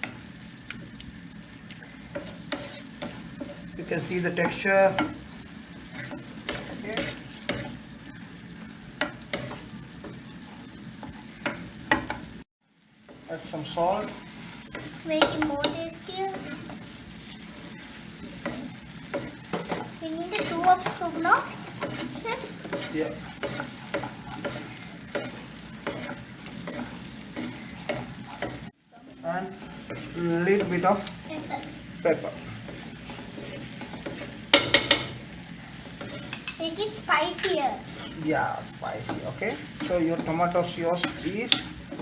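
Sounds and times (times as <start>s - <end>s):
sauce sizzling in a pan: 0.0s - 42.0s
utensil scraping a pan: 1.8s - 12.4s, 13.1s - 42.0s
spoon knocking against pan: 9.0s - 10.2s, 11.0s - 12.3s, 14.7s - 16.9s, 18.4s - 28.6s, 32.6s - 35.3s, 35.9s - 36.6s.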